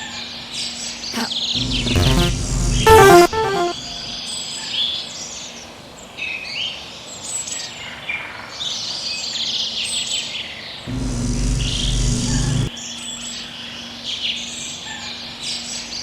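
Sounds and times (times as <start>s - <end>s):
low hum: 1.2s - 4.2s, 10.9s - 12.7s.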